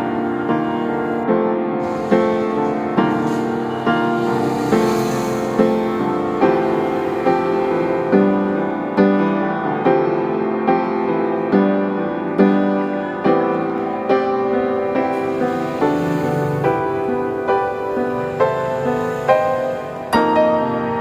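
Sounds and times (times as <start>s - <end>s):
slow gentle piano chords: 0.0s - 21.0s.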